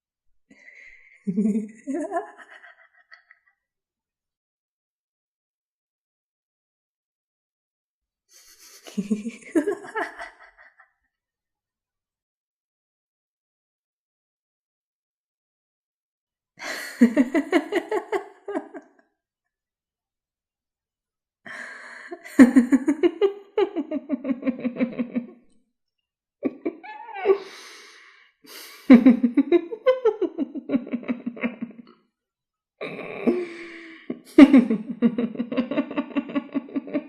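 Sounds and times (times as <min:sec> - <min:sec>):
person laughing: 0:01.2 - 0:03.3, 0:08.4 - 0:10.8, 0:16.6 - 0:18.8, 0:21.9 - 0:25.4, 0:26.4 - 0:27.6, 0:28.5 - 0:31.9, 0:32.8 - 0:37.0.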